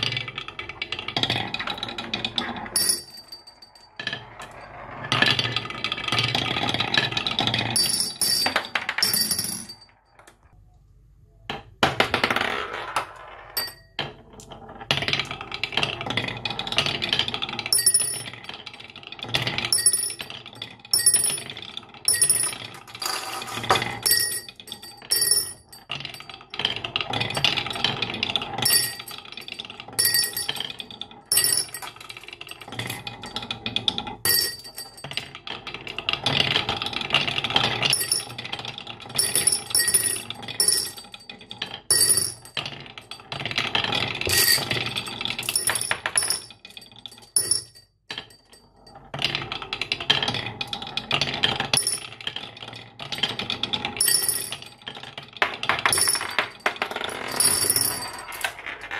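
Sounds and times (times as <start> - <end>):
marbles rolling and clattering: 0.0 - 10.5, 11.8 - 58.9
ringing marble clinks: 2.8 - 3.9, 7.8 - 9.9, 17.7 - 18.3, 19.7 - 20.3, 20.9 - 21.5, 22.1 - 23.1, 23.8 - 26.3, 28.6 - 30.7, 31.3 - 33.4, 34.3 - 35.2, 37.9 - 38.3, 39.2 - 41.2, 41.9 - 42.6, 47.2 - 48.6.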